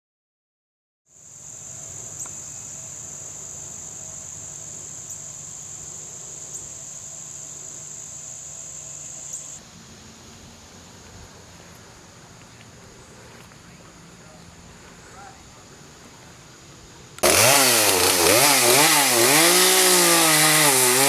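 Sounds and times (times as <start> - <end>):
insects chirping: 1.1 - 11.1.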